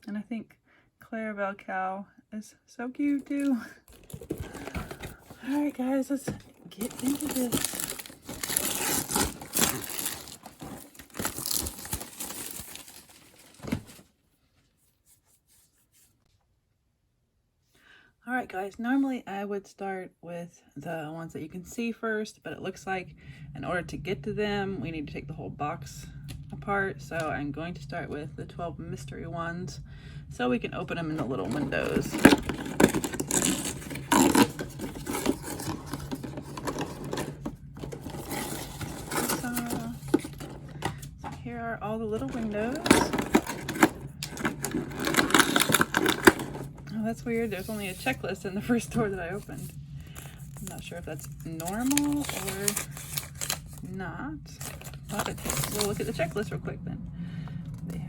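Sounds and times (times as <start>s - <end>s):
packaging crinkling and tearing: 3.3s - 5.8s, 6.5s - 14.1s, 31.4s - 41.1s, 42.2s - 46.9s, 49.4s - 53.9s, 54.6s - 56.4s.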